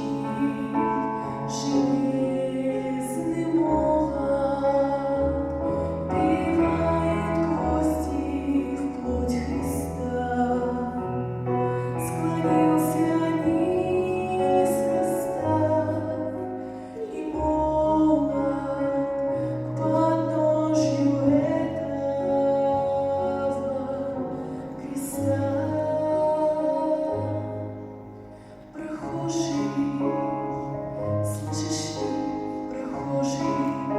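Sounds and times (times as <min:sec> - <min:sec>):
slow song with accompaniment: 0:00.0 - 0:33.9.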